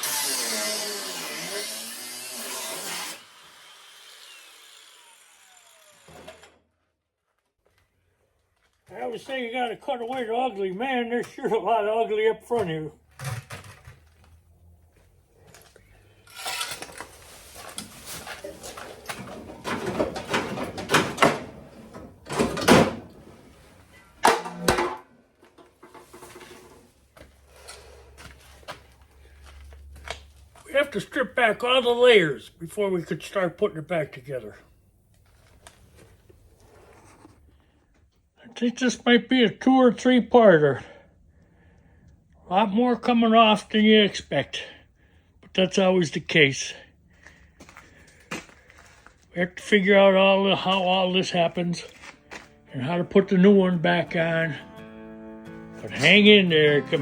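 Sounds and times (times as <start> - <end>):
power tool cutting sheet metal: 0.0 - 6.6
tool spinning down whine: 2.8 - 6.6
metal parts clattering: 16.2 - 17.2.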